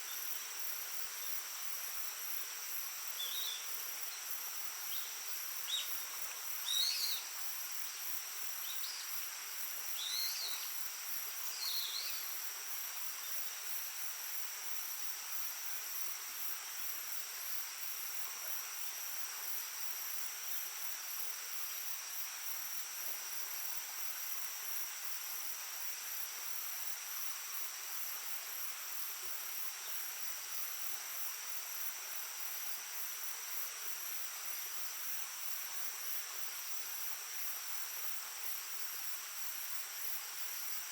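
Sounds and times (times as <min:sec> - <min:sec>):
babbling stream: 0:00.0 - 0:14.0
insects trilling: 0:00.0 - 0:40.9.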